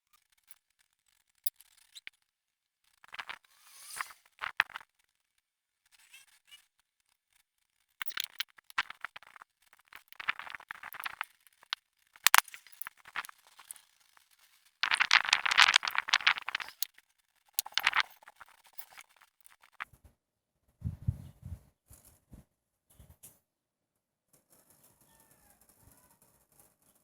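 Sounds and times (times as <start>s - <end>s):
objects scraping and rattling: 3.1s - 4.8s, 8.0s - 13.8s, 14.8s - 16.9s, 17.6s - 19.8s.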